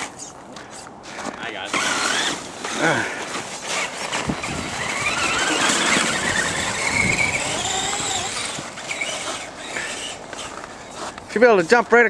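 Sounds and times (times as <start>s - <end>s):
electric motor whining: 3.7s - 11.2s.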